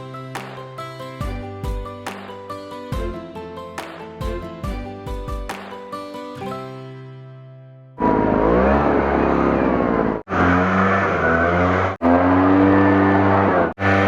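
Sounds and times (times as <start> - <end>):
small petrol engine running: 8.0 - 10.9.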